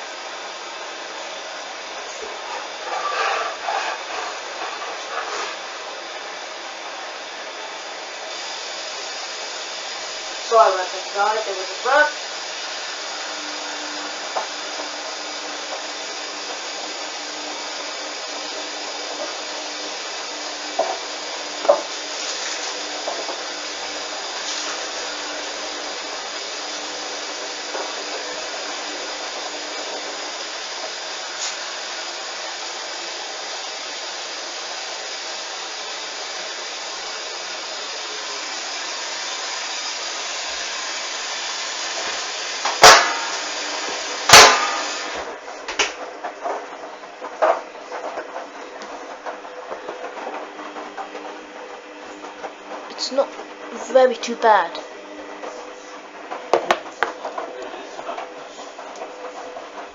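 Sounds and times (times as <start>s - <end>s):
washing machine whirring: 0.0s - 59.9s.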